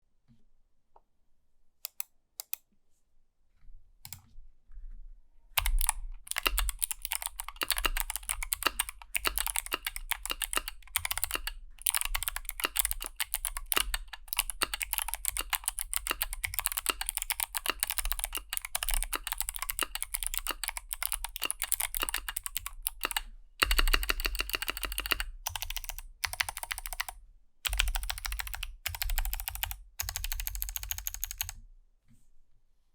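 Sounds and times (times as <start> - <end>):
clicky mechanical keyboard typing: 5.6 - 31.6.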